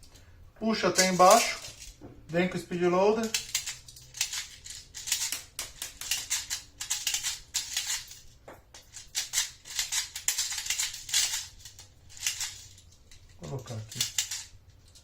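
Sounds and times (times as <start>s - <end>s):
plastic pellets clicking and rattling: 3.2s - 15.0s.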